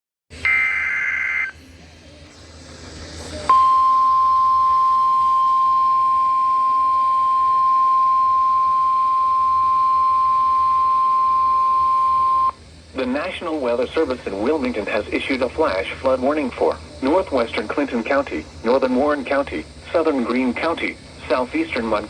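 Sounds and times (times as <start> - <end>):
buzzy digital data warble: 0.4 - 1.6
steady warning alarm tone: 0.4 - 1.6, 3.5 - 22.0
faint hiss: 12.5 - 22.0.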